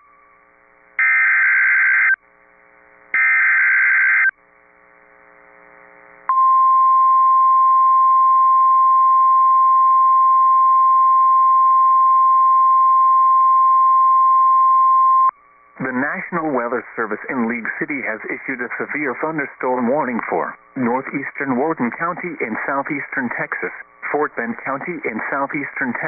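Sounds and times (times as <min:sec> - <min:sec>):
steady warning alarm tone: 0:01.0 - 0:02.2, 0:03.2 - 0:04.3.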